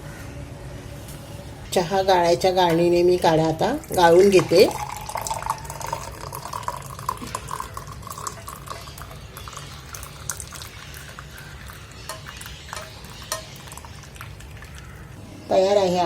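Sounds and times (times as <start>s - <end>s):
light clicks and drips: 3.4s - 15.2s
liquid pouring into a cup: 3.8s - 15.2s.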